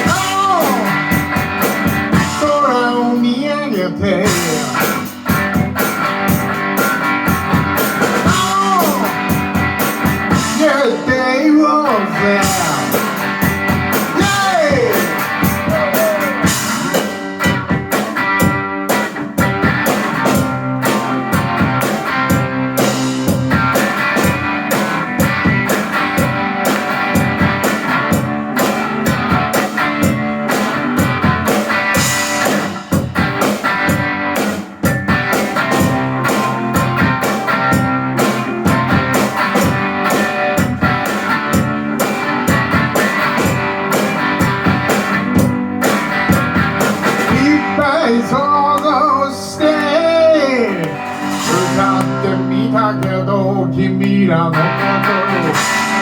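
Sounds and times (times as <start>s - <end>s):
rock band playing: 0.0s - 56.0s
person shouting yay: 8.3s - 9.2s, 14.2s - 16.5s.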